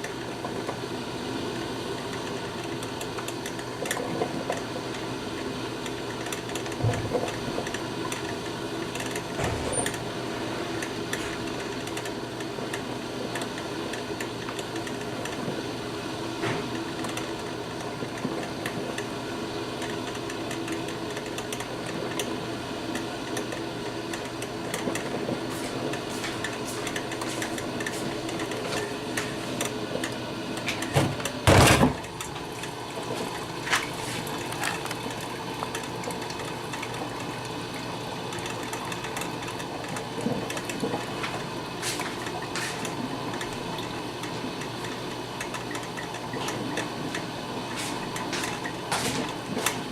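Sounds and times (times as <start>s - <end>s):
coffee maker humming: 0.0s - 49.9s
light irregular ticks: 10.8s - 15.4s, 22.9s - 25.1s, 44.2s - 48.8s.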